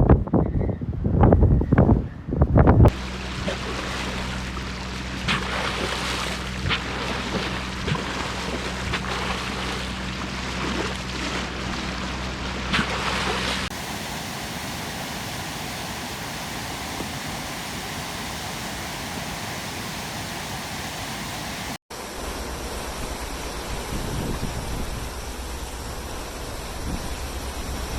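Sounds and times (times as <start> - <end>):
water splashing and lapping: 2.9 - 21.8
flowing water rushing: 2.9 - 27.9
low engine-like hum: 2.9 - 27.9.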